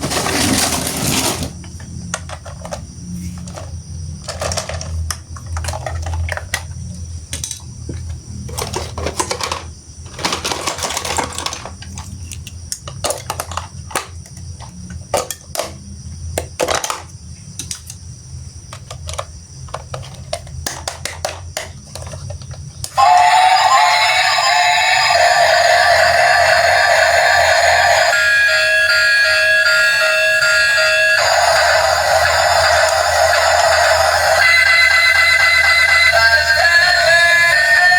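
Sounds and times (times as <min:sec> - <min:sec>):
loud music: 0:34.5 - 0:37.9.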